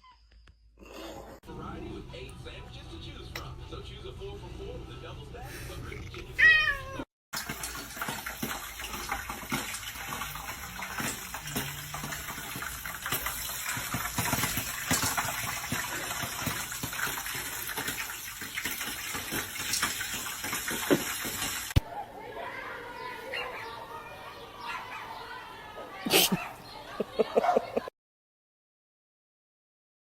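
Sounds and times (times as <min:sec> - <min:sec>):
tap water running: 0:07.4 - 0:21.8.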